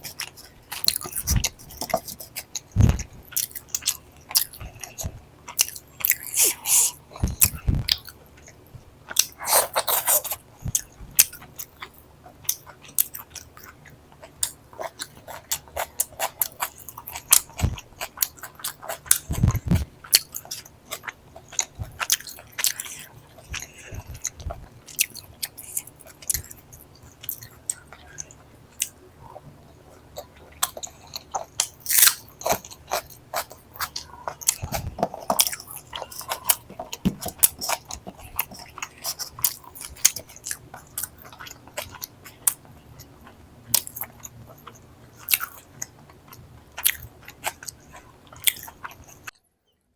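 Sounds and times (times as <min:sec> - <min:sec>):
person chewing with wet smacks: 0:00.0 - 0:49.3
crunchy bites: 0:30.6 - 0:42.4.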